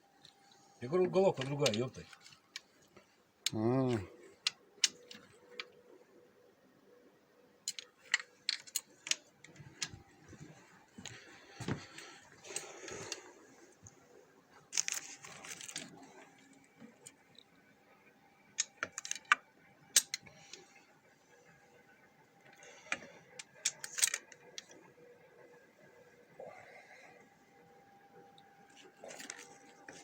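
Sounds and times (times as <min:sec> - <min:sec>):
metal tools clicking and clinking: 0:07.7 - 0:09.9, 0:18.6 - 0:19.4, 0:20.0 - 0:20.4, 0:22.6 - 0:24.8.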